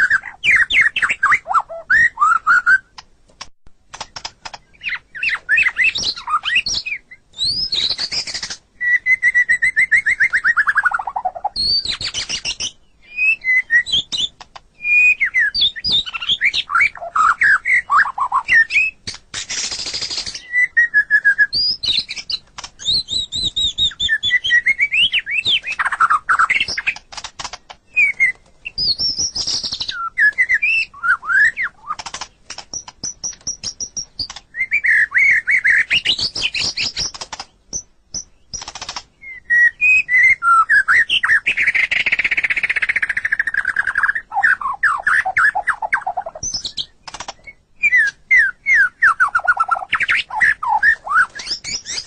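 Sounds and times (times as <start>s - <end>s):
bird singing whistled song: 0.0s - 3.0s, 4.5s - 27.0s, 27.8s - 32.1s, 32.7s - 52.0s
bird sharp clicking: 2.9s - 6.2s, 14.2s - 14.7s, 25.6s - 29.9s, 31.5s - 34.7s, 35.7s - 39.1s, 45.7s - 48.2s.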